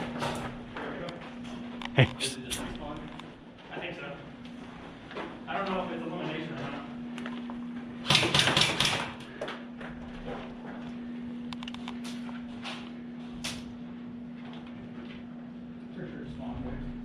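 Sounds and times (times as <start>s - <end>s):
steady low hum: 0.0s - 8.1s.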